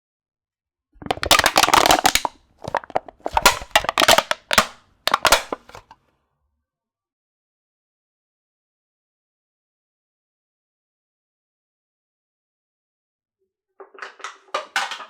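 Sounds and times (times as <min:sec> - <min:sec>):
metal can being crushed: 0:01.0 - 0:06.0.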